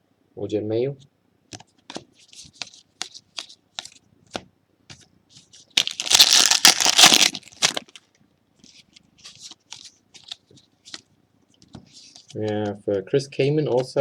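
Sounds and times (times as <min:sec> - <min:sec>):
foil wrapper crinkling: 0:05.7 - 0:08.1.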